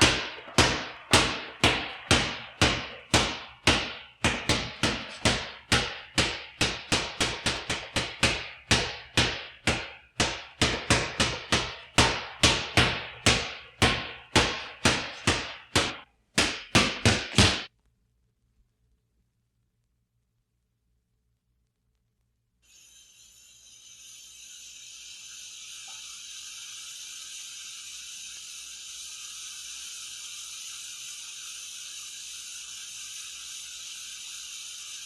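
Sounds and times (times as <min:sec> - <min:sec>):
basketball bouncing on hard floor: 0:00.0 - 0:17.7.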